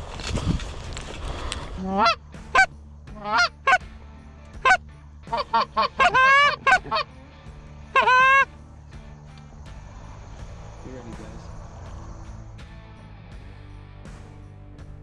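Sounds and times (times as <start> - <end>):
rustling of movement: 0.0 - 3.0
goose honking: 5.5 - 7.1, 8.0 - 8.4.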